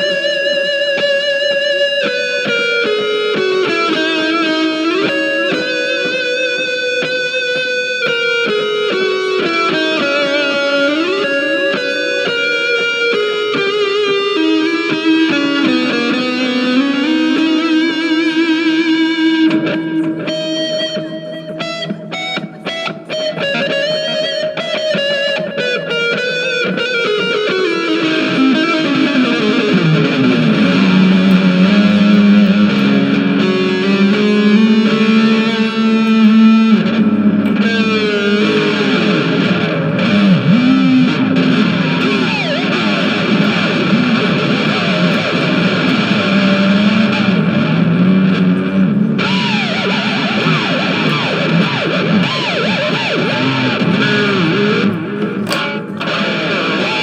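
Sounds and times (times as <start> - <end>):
distorted electric guitar: 0.0 - 57.0.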